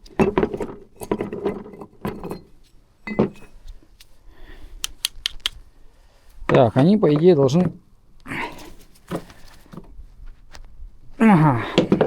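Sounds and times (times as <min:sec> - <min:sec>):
metal parts and tool clinking: 0:00.1 - 0:04.2.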